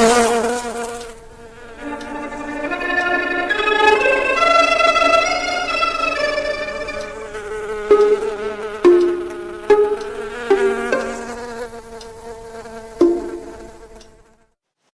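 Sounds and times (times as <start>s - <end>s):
slow instrumental pitched notes: 1.8s - 11.5s, 13.0s - 13.9s.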